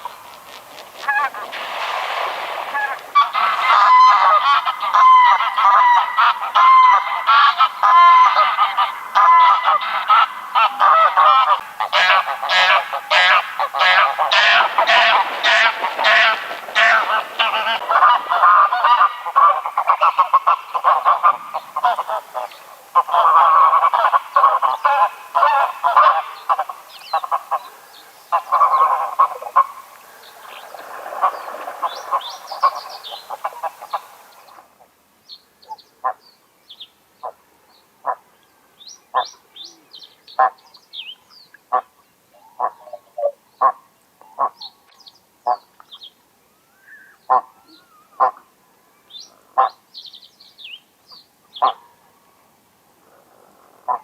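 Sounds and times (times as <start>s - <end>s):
geese honking: 0.0s - 34.6s.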